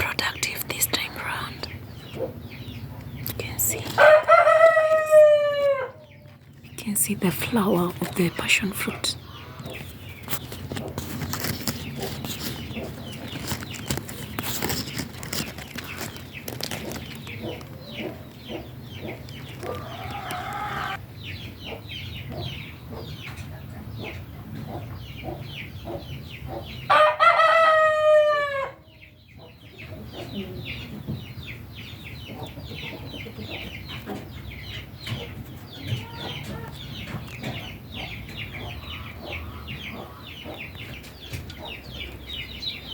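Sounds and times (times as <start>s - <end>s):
rooster crowing: 4.0s - 6.1s, 19.7s - 21.0s, 26.9s - 28.8s
chicken clucking: 7.7s - 28.7s, 29.3s - 42.9s.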